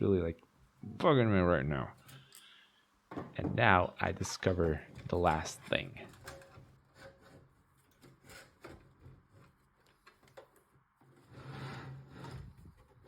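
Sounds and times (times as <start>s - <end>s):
rough rubbing scrape: 11.2s - 12.8s.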